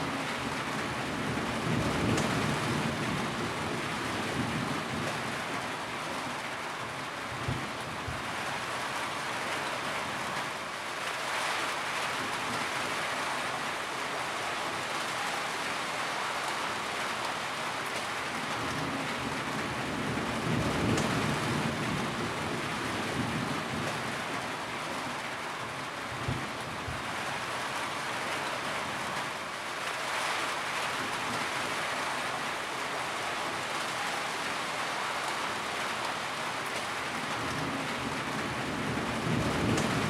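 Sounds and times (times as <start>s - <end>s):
steady rain falling: 0.0s - 40.0s
low roll of thunder: 19.8s - 24.4s, 37.4s - 40.0s.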